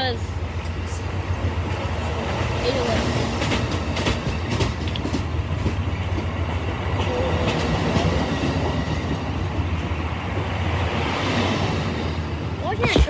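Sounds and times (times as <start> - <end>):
train cars rumbling past: 0.0 - 13.0
wheels clicking over rail joints: 1.6 - 10.5.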